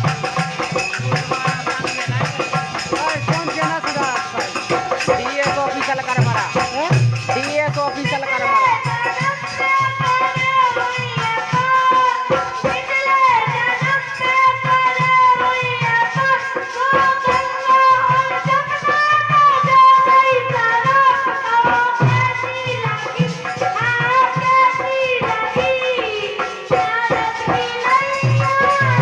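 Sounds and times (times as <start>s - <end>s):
low drum beats: 0.0s - 11.7s
girl singing: 0.0s - 29.0s.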